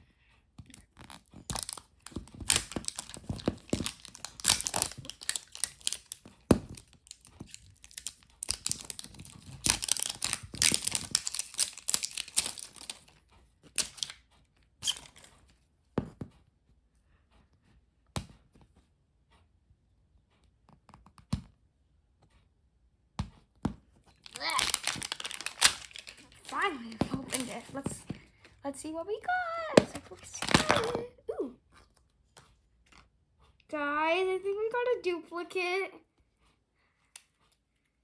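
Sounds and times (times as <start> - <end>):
plastic clicks: 0.6 - 14.2, 24.2 - 28.4
plastic wrapping crinkling and tearing: 0.8 - 13.1, 13.7 - 14.2, 24.1 - 28.2, 29.7 - 31.1.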